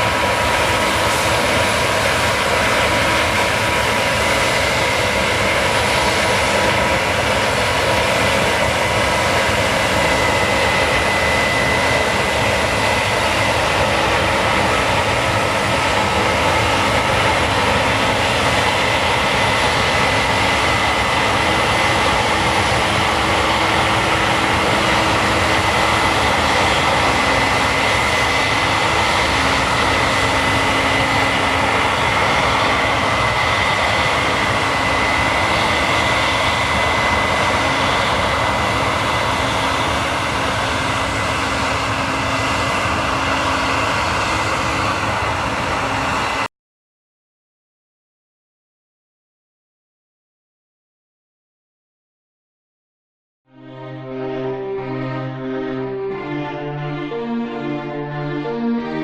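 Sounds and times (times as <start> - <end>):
combine harvester running: 0.0 - 46.5
high steady whine: 0.0 - 46.5.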